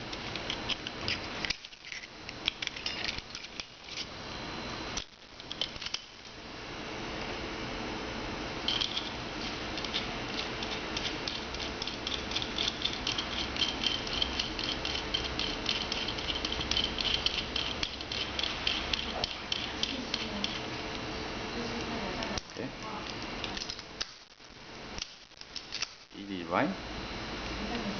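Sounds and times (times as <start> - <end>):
pliers clicking and rattling: 8.7 - 9.2, 9.8 - 20.6.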